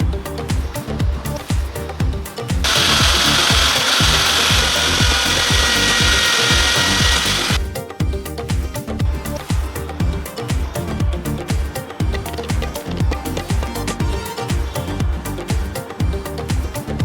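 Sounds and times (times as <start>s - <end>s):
background music with beat: 0.0s - 17.0s
power tool grinding acrylic: 2.7s - 7.6s.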